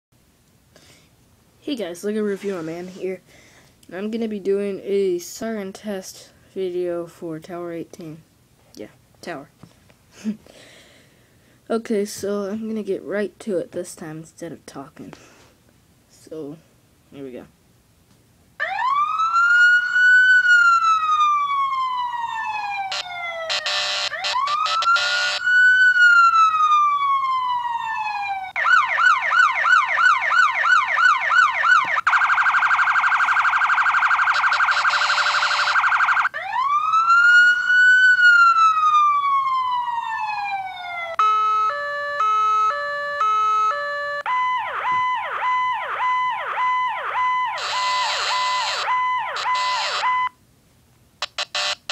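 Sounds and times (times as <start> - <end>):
electronic siren cycling tones: 18.6 - 50.4, 51.2 - 51.9.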